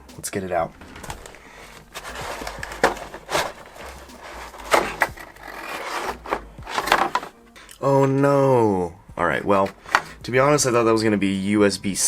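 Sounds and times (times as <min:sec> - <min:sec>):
packaging scraping and rustling: 0:00.8 - 0:07.4.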